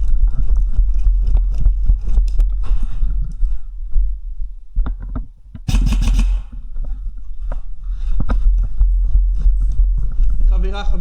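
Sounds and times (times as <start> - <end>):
sharp knocks: 5.6 - 6.7.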